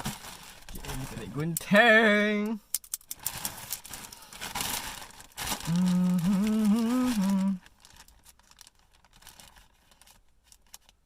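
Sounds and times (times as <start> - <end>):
rustle of parcel packaging: 0.0 - 1.6, 3.2 - 11.0
man humming: 5.6 - 7.6.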